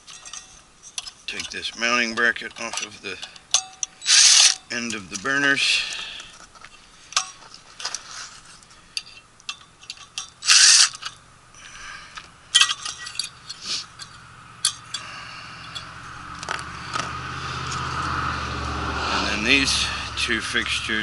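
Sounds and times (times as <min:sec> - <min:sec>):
metal tool clicks and clinks: 0:00.0 - 0:05.3, 0:09.0 - 0:11.2, 0:12.5 - 0:17.0.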